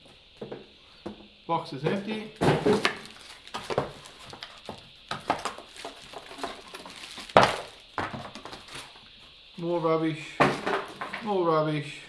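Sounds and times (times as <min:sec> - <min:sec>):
packaging crinkling: 0:02.3 - 0:09.0
box clicks and knocks: 0:02.4 - 0:08.8, 0:10.4 - 0:11.2.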